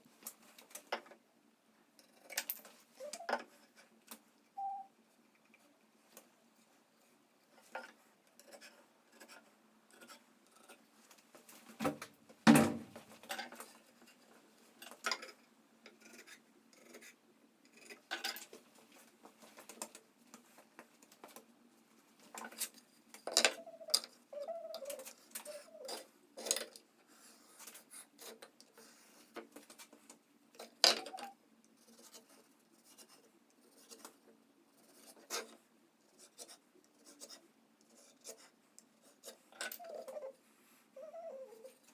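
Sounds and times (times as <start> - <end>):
hand tools knocking and scraping wood: 11.7 - 13.6.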